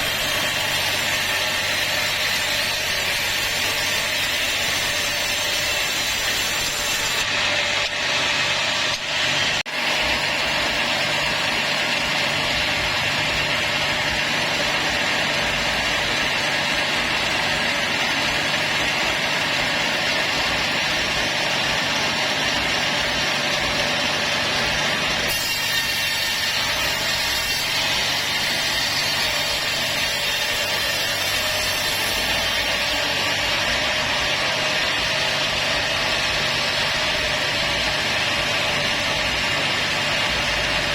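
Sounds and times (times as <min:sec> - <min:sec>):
motor humming: 0:00.0 - 0:40.9
saw cutting log: 0:00.0 - 0:40.9.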